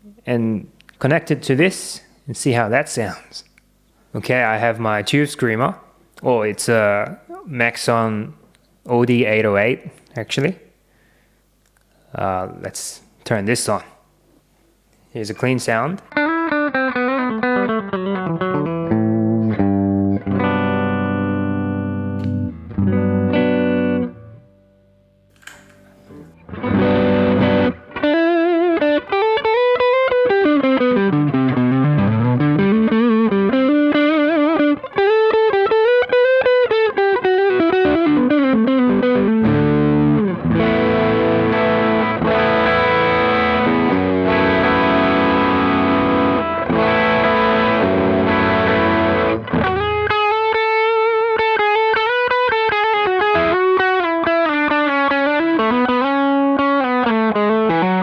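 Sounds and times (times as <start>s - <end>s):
overdriven electric guitar: 16.0s - 58.0s.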